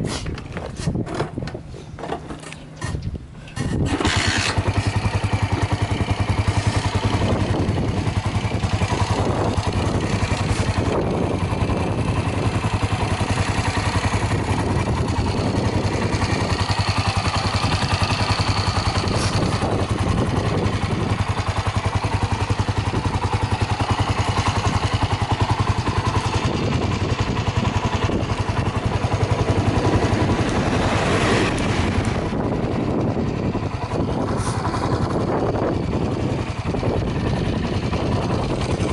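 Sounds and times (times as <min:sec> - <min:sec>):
engine starting and idling: 0:02.1 - 0:22.2.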